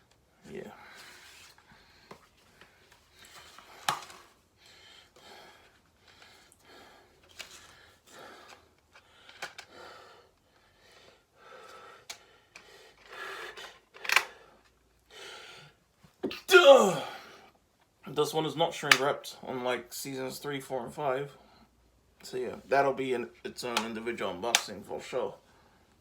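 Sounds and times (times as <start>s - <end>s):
rustling and sliding packaging: 0.9s - 4.4s, 7.1s - 9.7s.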